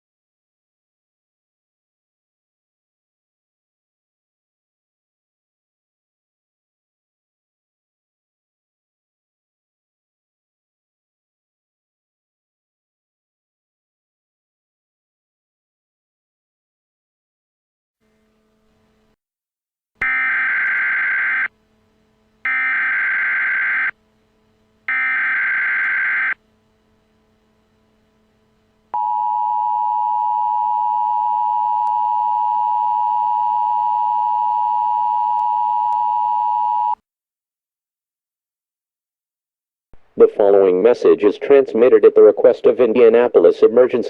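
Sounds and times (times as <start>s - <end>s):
harsh two-tone attention signal: 20.0s - 21.5s, 22.5s - 24.0s, 24.9s - 26.4s, 29.0s - 37.0s.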